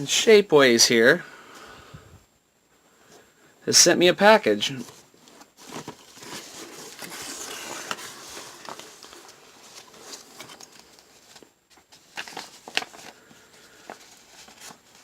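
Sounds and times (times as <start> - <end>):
packaging rustling and crinkling: 4.8 - 15.0.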